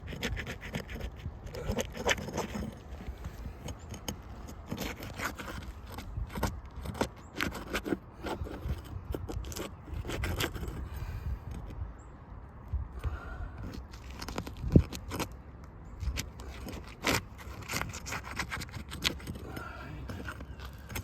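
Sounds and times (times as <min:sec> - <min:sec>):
tool scraping under roof shingles: 0:00.0 - 0:11.7, 0:16.0 - 0:21.0.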